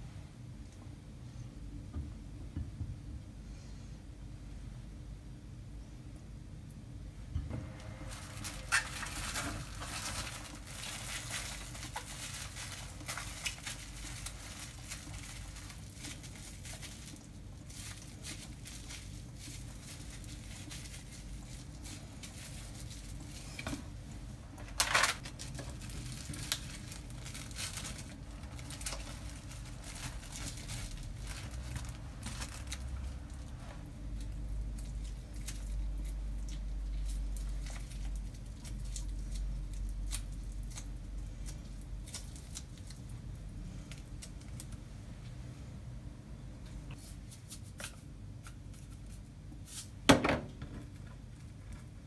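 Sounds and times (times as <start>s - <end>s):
crinkling and rustling: 7.4s - 45.4s.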